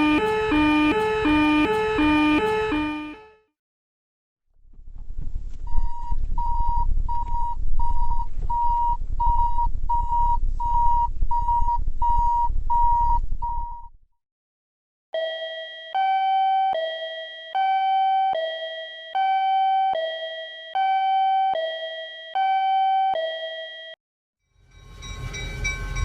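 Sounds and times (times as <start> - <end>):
level crossing bell beeping: 0.0 - 3.4.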